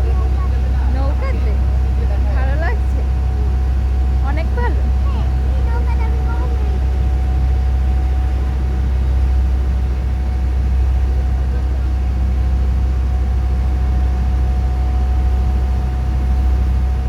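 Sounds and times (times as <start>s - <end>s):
boat engine drone: 0.0s - 17.0s.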